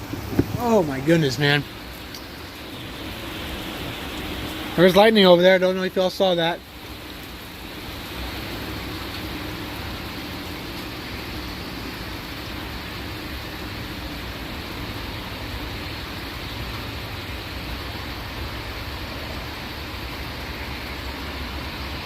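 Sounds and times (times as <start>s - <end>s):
heavy rain pouring: 0.0s - 22.0s.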